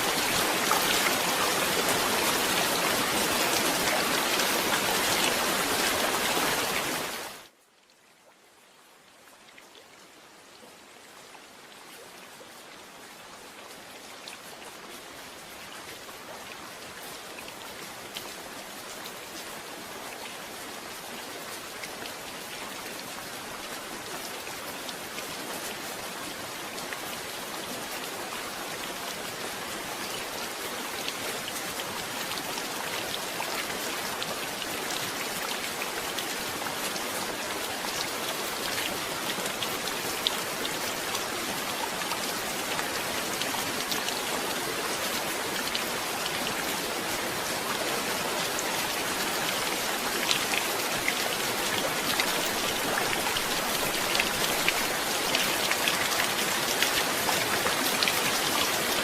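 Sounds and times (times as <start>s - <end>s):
heavy rain: 0.0s - 59.0s
raindrops pattering on surface: 48.5s - 59.0s.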